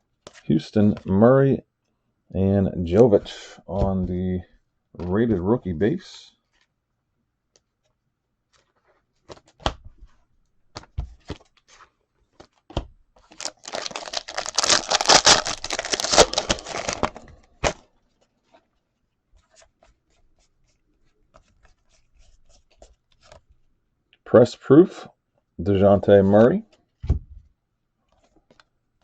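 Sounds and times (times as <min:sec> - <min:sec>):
foil wrapper tearing and crinkling: 0:13.2 - 0:17.8.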